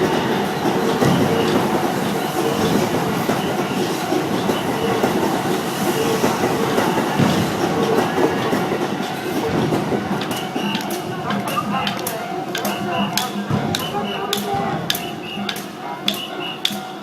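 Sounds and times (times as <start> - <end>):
train wheels clattering over rails: 0.0 - 17.0.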